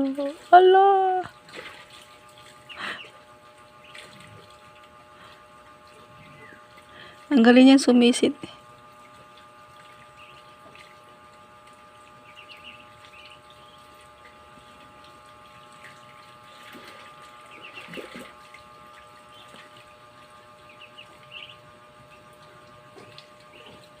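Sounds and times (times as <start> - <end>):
steady hum: 0.0 - 24.0
water sounds: 0.0 - 24.0
duckling splashing into water: 1.4 - 6.1, 9.0 - 24.0
ducklings peeping: 2.4 - 4.9, 5.9 - 7.0, 8.9 - 24.0.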